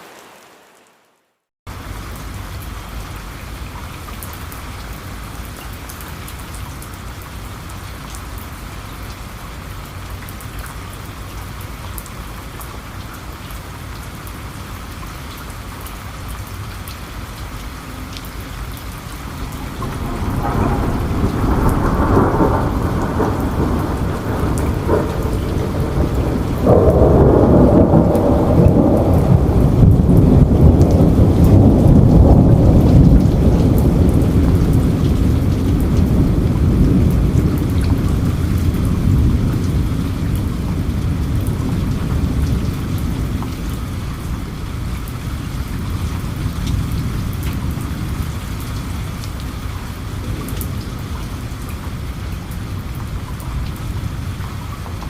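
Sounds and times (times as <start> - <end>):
steady rain falling: 0.0 - 55.0
rolling thunder rumble: 17.9 - 55.0.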